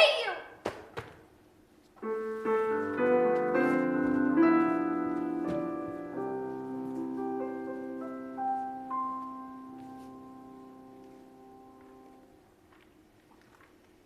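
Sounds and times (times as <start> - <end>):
piano sustained notes and chords: 2.0 - 12.4.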